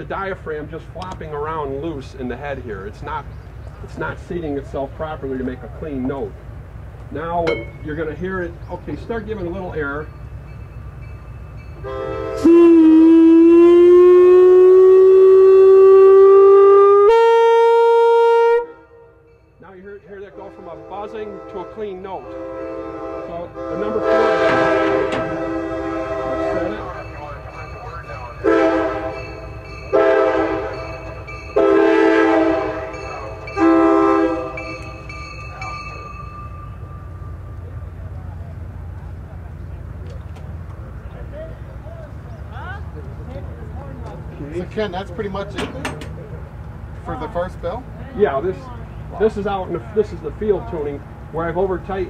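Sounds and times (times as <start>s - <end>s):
air horn note: 11.8s - 19.2s, 20.4s - 26.9s, 28.4s - 29.2s, 29.9s - 30.8s, 31.6s - 33.0s, 33.6s - 34.7s
horn buzz: 11.8s - 19.2s, 20.4s - 27.0s.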